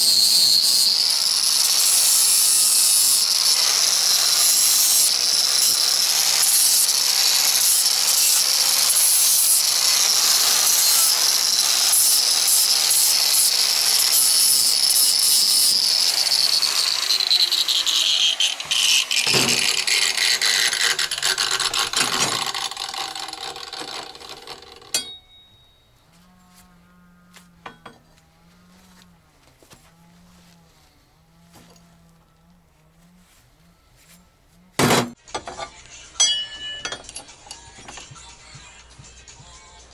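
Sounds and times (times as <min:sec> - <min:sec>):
electric saw whining and spinning down: 0:00.0 - 0:25.1.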